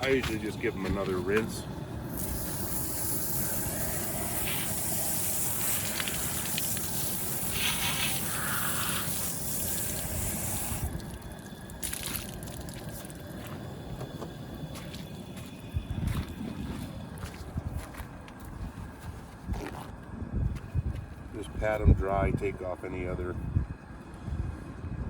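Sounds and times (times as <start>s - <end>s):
running water splashing: 2.2s - 13.5s.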